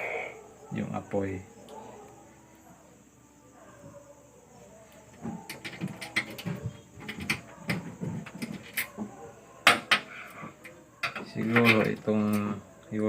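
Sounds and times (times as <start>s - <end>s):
gas stove parts clicking and knocking: 5.1s - 12.5s.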